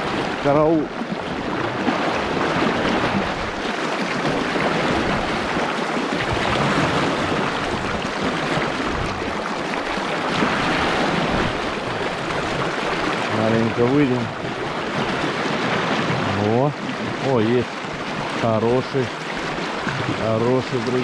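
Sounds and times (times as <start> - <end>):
river rushing: 0.0 - 21.0.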